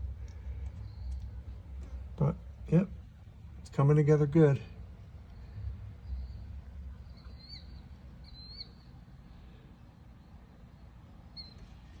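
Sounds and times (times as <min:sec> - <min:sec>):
low steady hum: 0:00.0 - 0:12.0
faint high chirps: 0:05.3 - 0:09.0, 0:10.2 - 0:11.9.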